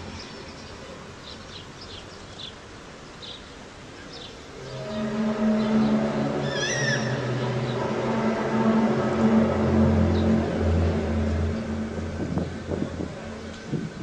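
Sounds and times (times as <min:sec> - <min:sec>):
bending high call: 0:04.6 - 0:13.4
loud low drone: 0:04.6 - 0:14.0.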